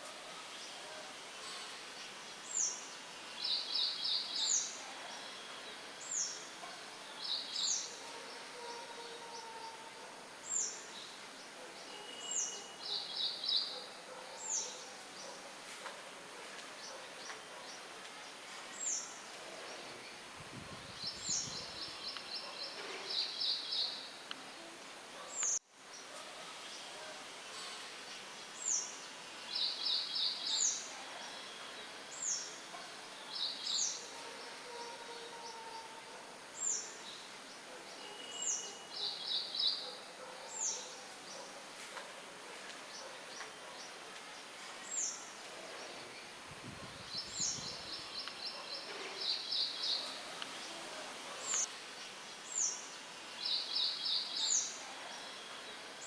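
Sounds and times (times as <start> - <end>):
wind hiss: 20.1 - 22.4, 46.1 - 48.5.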